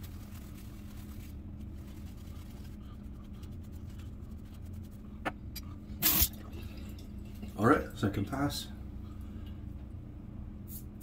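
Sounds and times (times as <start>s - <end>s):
shaving brush swishing lather: 0.0s - 5.1s
steady low hum: 0.0s - 11.0s.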